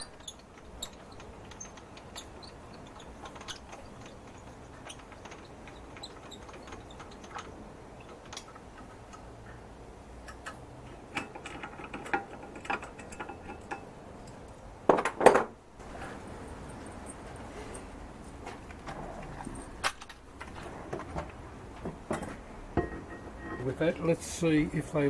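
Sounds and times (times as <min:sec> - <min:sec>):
metal tools clinking: 0:11.2 - 0:14.6.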